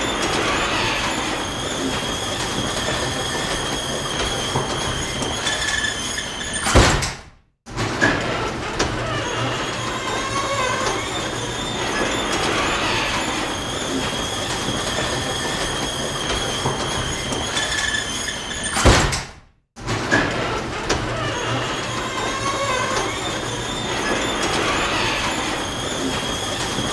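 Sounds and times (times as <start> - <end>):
garage door running: 0.0 - 26.9
garage door thud: 6.4 - 13.2, 18.6 - 22.4.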